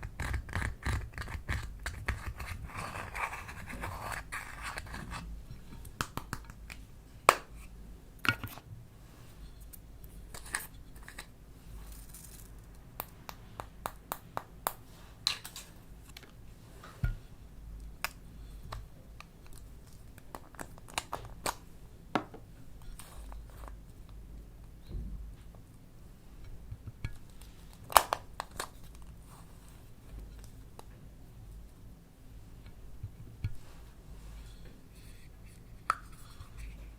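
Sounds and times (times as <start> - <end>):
small objects clicking and scratching: 0.0 - 5.2, 10.3 - 13.2.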